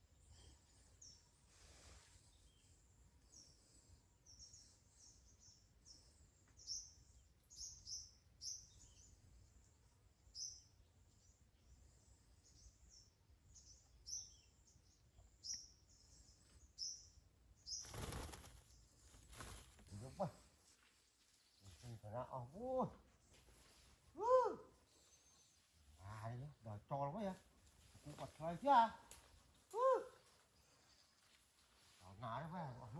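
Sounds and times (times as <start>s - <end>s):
small bird chirping: 2.0s - 22.7s.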